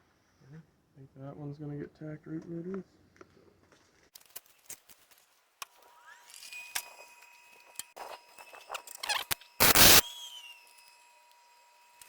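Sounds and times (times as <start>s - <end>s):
welding arc crackling: 9.0s - 10.1s
steady high whine: 9.6s - 10.9s.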